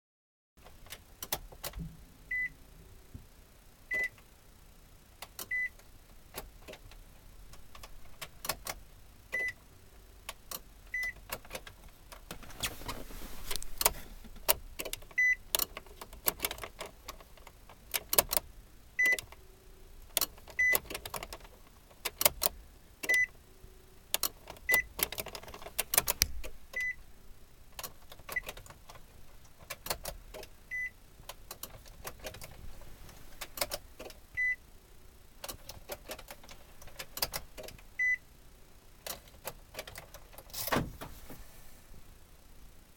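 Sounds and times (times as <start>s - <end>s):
relays clicking: 24.1s - 26.9s, 35.4s - 37.9s.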